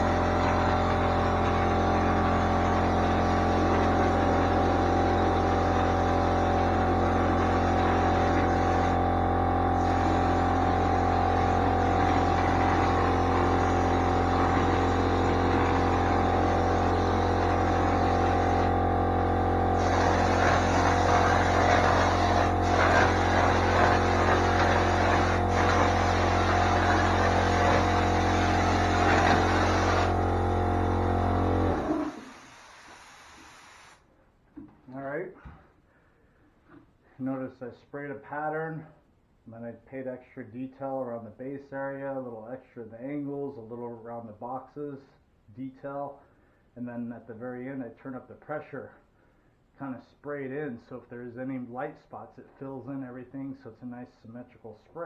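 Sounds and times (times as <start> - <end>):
air compressor humming: 0.0 - 34.0
spray gun air hissing: 19.8 - 30.2, 32.0 - 34.0.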